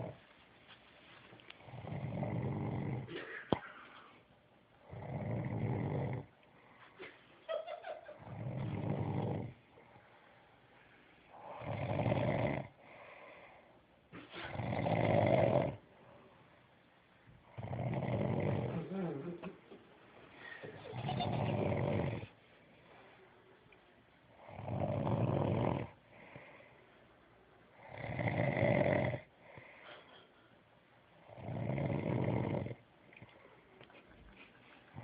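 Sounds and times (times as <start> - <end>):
person snoring: 1.6 - 3.1, 4.9 - 6.3, 8.2 - 9.6, 11.4 - 12.8, 14.5 - 15.8, 17.5 - 19.4, 24.4 - 26.0, 27.8 - 29.3, 31.3 - 32.8.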